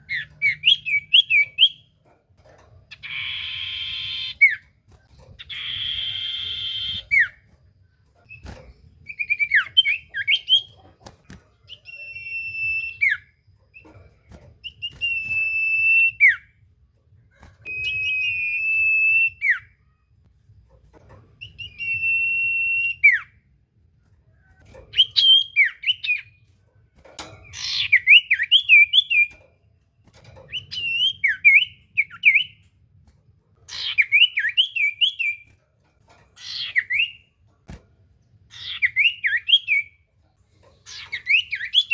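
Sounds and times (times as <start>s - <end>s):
bird singing whistled phrases: 11.7s - 13.2s, 14.6s - 16.5s, 17.7s - 19.7s, 21.4s - 23.3s, 38.6s - 39.9s.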